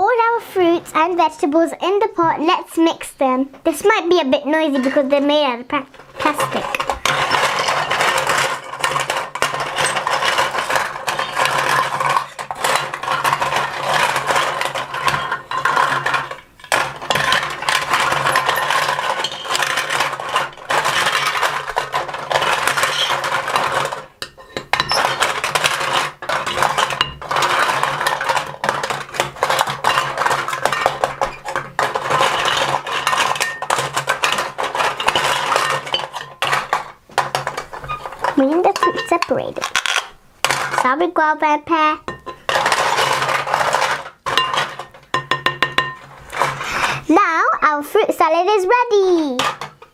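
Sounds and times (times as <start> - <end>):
plastic toy pieces clattering: 4.1 - 41.0, 41.8 - 47.8, 48.9 - 49.9.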